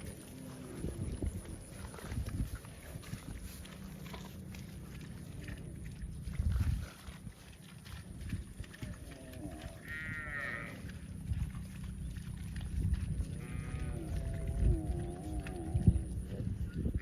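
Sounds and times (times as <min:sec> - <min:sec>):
calf bawling: 0:09.0 - 0:10.9, 0:13.4 - 0:16.1.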